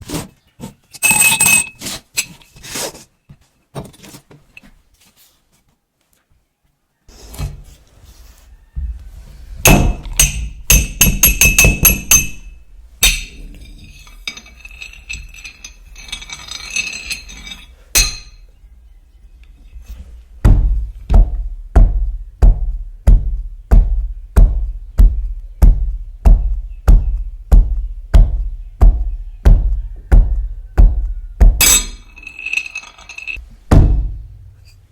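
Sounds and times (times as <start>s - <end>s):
ringing metallic clinks: 9.9s - 18.4s, 31.6s - 33.4s
heavy thuds: 20.4s - 34.4s.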